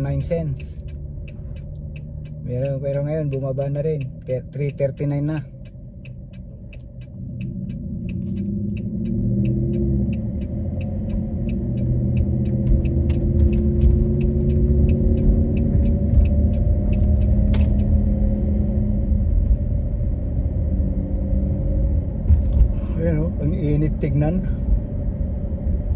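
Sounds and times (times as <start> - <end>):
fast regular ticking: 0.0 - 17.9
car engine and road rumble: 0.0 - 25.9.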